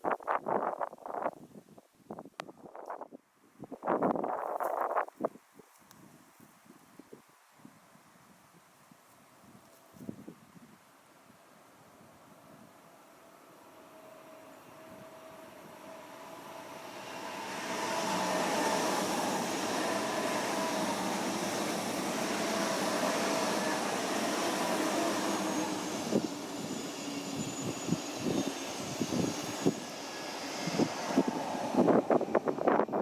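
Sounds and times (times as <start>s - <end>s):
train rushing past: 13.2s - 33.0s.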